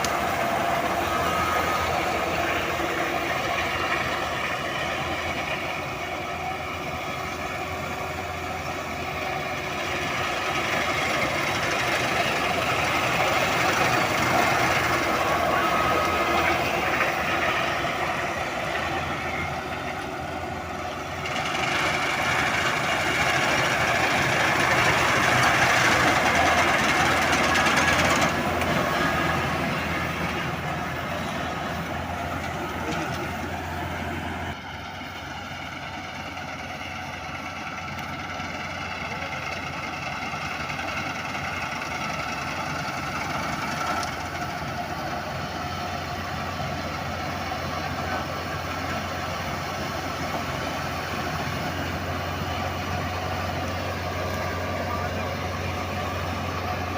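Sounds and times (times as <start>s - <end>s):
combine harvester engine running: 0.0s - 56.9s.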